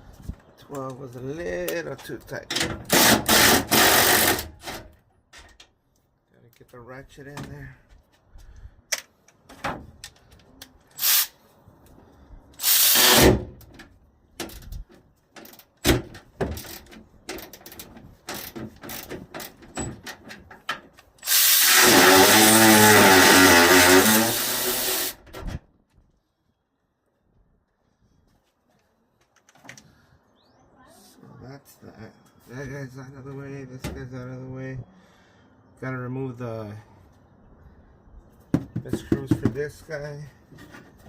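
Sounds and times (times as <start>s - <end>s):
power tool spinning bolt: 2.9s - 4.6s, 12.6s - 13.4s, 21.2s - 25.2s.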